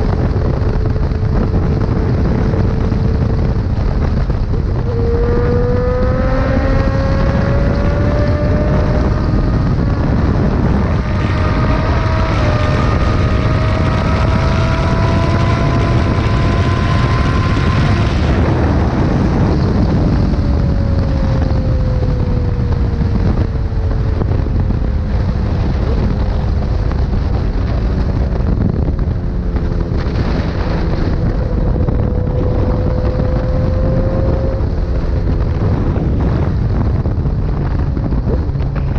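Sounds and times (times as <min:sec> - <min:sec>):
motorcycle engine: 0:00.0 - 0:38.9
wind rumble on microphone: 0:00.0 - 0:38.9.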